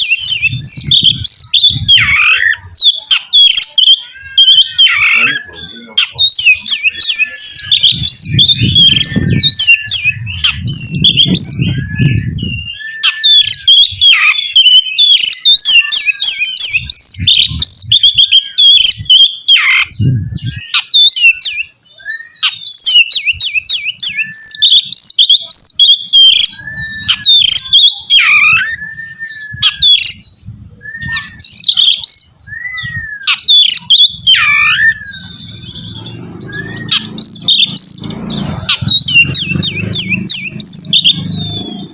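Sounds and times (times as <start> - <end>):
bird singing: 0.0 - 41.9
low rumble: 34.9 - 41.9.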